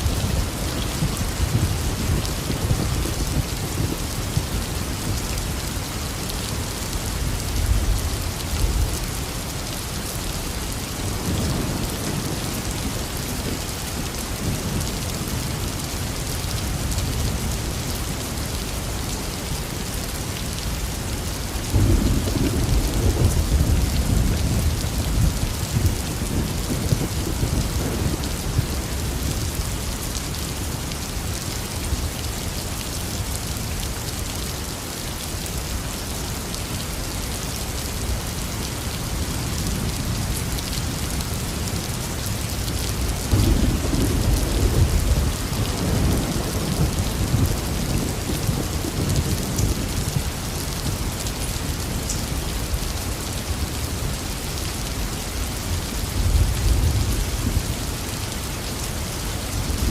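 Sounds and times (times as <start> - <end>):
heavy rain falling: 0.0 - 59.9
thunder rumbling: 43.0 - 50.4.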